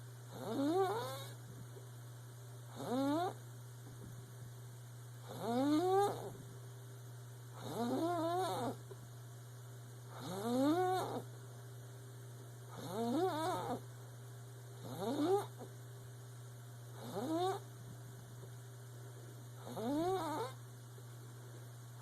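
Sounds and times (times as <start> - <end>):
squeaky snoring: 0.3 - 1.4, 2.7 - 3.4, 5.2 - 6.3, 7.6 - 8.8, 10.1 - 11.2, 12.7 - 13.8, 14.8 - 15.6, 17.0 - 17.6, 19.6 - 20.6.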